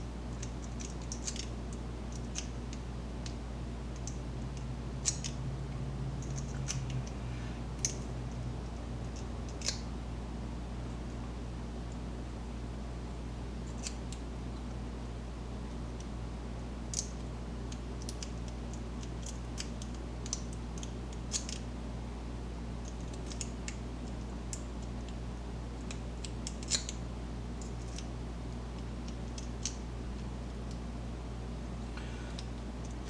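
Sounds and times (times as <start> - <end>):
steady low hum: 0.0 - 33.0
lock picks clicking and scratching: 0.3 - 3.4, 4.0 - 5.4, 16.9 - 21.7, 22.8 - 25.2, 25.8 - 27.0, 28.8 - 29.8.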